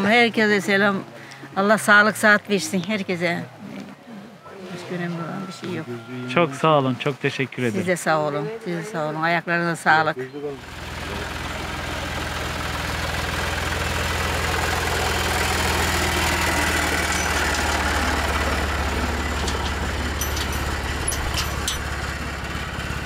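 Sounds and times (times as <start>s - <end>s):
road noise: 10.2s - 23.0s
vehicle engine hum: 10.5s - 23.0s.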